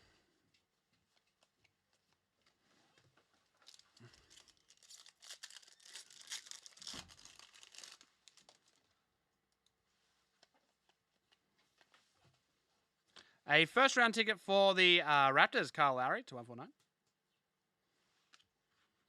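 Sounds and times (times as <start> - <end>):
wrapper tearing and crinkling: 3.6 - 8.9.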